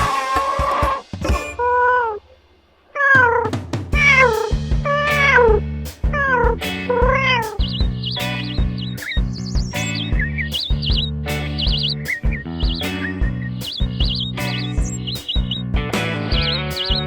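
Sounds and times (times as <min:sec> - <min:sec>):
cat meowing: 0:03.0 - 0:03.4, 0:04.0 - 0:04.5
music with steady beat: 0:03.7 - 0:17.0.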